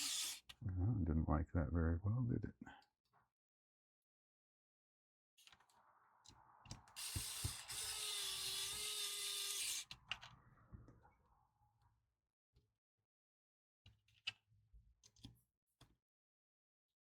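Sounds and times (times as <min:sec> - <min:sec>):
electric screwdriver whining: 0:00.0 - 0:00.5, 0:07.0 - 0:10.0.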